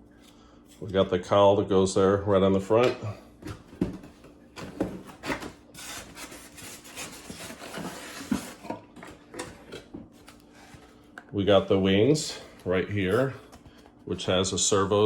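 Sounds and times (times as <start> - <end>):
plane parts and packaging rubbing: 4.9 - 11.1.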